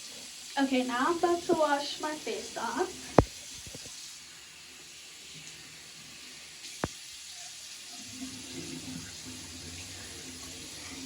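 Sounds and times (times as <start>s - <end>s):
tap water running into sink: 2.8s - 4.2s, 6.6s - 11.0s.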